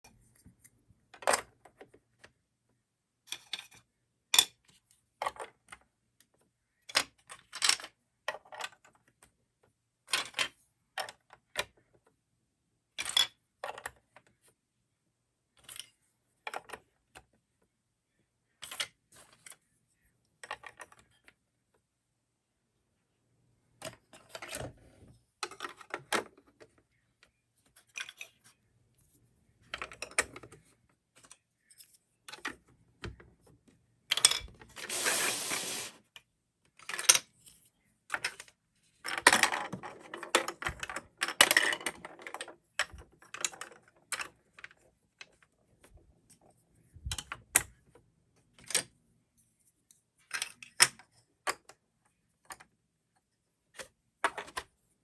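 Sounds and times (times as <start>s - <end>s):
rattling clatter of plastic blocks: 23.8s - 26.8s, 34.1s - 36.0s, 36.7s - 47.8s.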